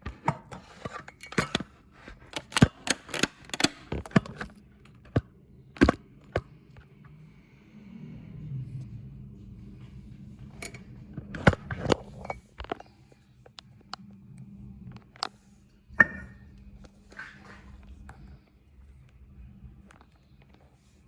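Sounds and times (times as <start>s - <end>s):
objects knocking and clicking: 0.0s - 6.9s
faint low hum: 3.9s - 21.0s.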